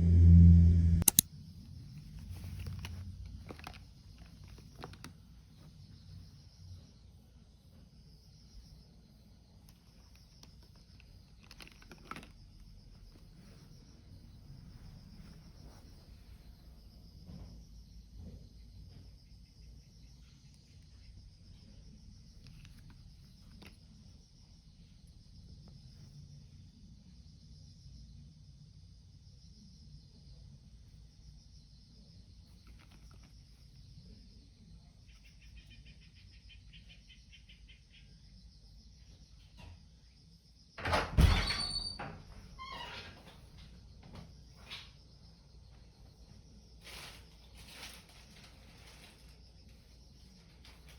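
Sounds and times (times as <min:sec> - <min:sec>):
low rumble: 0:00.0 - 0:01.2
steady high-pitched trill: 0:00.0 - 0:01.2.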